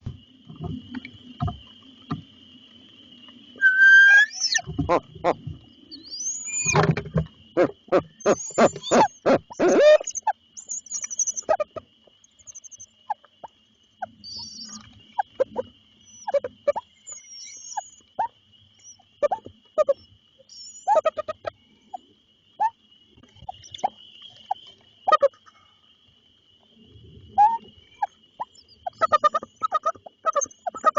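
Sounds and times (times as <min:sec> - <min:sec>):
owls calling: 0:03.6 - 0:05.4, 0:06.0 - 0:06.9, 0:07.6 - 0:11.8, 0:12.4 - 0:21.5, 0:27.4 - 0:30.9.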